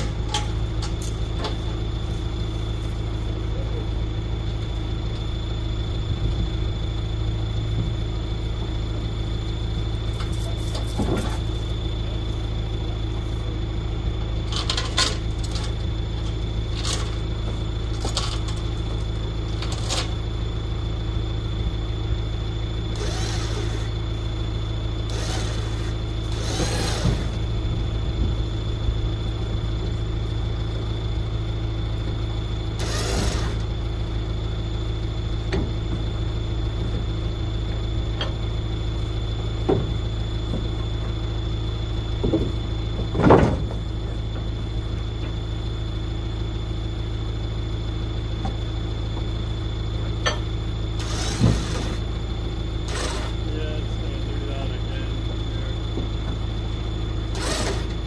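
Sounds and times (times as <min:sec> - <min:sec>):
light clinks and rattles: 0:00.0 - 0:01.7, 0:10.2 - 0:11.8, 0:14.4 - 0:20.2
engine humming: 0:00.0 - 0:58.0.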